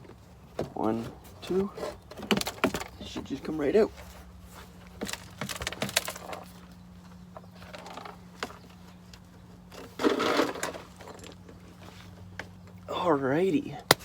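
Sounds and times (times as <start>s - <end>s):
panel scraping rattle: 9.7s - 11.4s.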